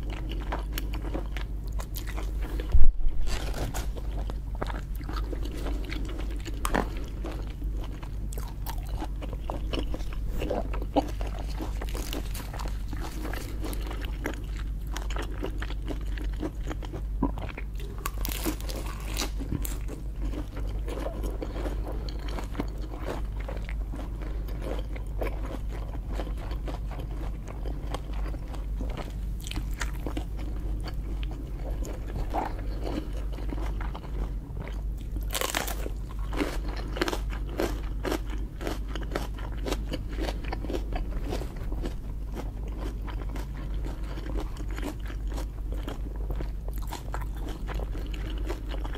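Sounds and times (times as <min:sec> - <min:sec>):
low hum: 0:00.0 - 0:15.6
crunching and chewing shellfish: 0:00.0 - 0:48.9.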